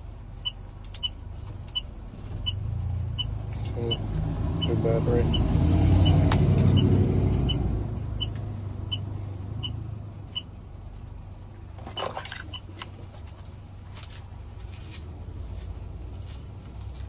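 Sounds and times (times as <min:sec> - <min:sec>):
low steady hum: 0:07.5 - 0:17.0.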